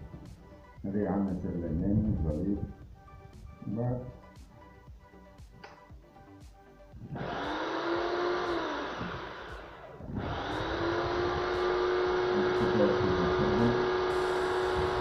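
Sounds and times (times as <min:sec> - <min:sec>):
blender motor whining: 0:07.0 - 0:15.0.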